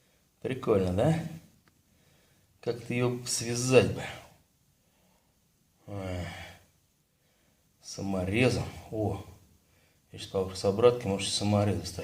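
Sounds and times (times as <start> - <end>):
man speaking: 0.4 - 1.5, 2.6 - 4.4, 5.8 - 6.6, 7.8 - 9.4, 10.1 - 12.0.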